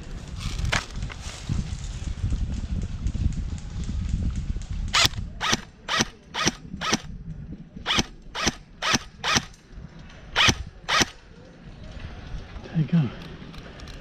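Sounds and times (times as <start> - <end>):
crisp ratcheting strokes: 4.9 - 7.1, 7.9 - 9.6, 10.4 - 11.2.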